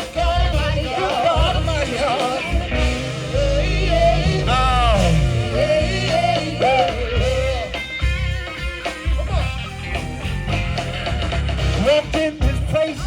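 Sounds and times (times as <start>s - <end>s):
upbeat band music: 0.0s - 13.0s.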